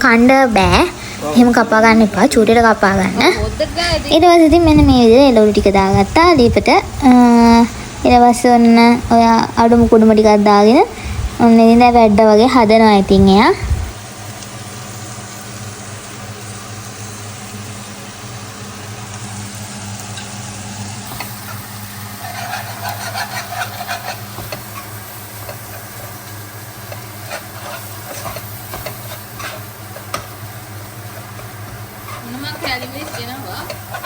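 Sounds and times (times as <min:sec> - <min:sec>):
steady low hum: 0:00.0 - 0:34.0
vegetables sizzling in a pan: 0:00.0 - 0:34.0
utensil scraping a pan: 0:21.1 - 0:30.3, 0:31.1 - 0:34.0.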